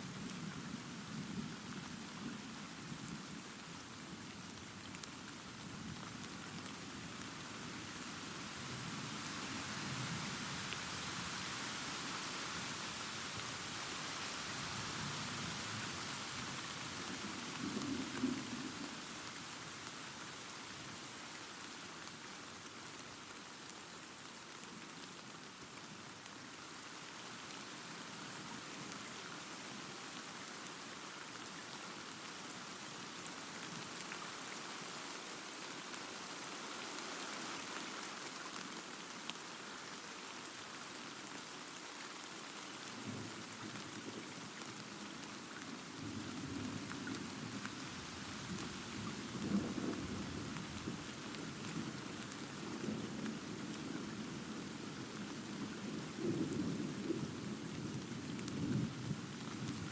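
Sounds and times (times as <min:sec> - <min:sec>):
rain falling: 0:00.0 - 0:59.9.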